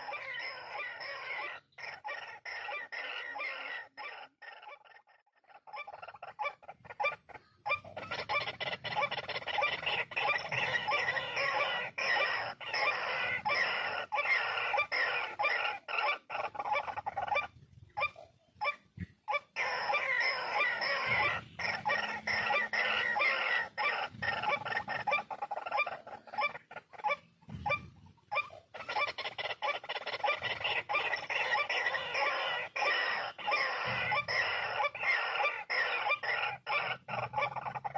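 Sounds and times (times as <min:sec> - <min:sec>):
waterhen calling rapid notes: 0:00.0 - 0:37.9.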